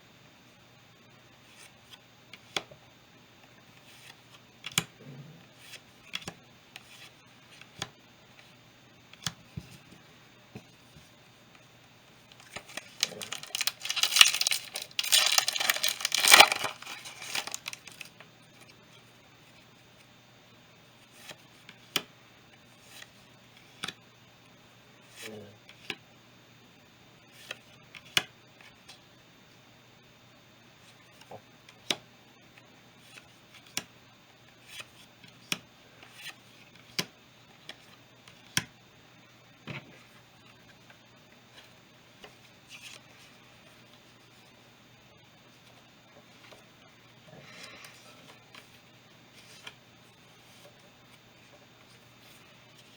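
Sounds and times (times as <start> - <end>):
foil pack crinkling and tearing: 12.4 - 18.1
trading cards snapping: 12.5 - 18.0.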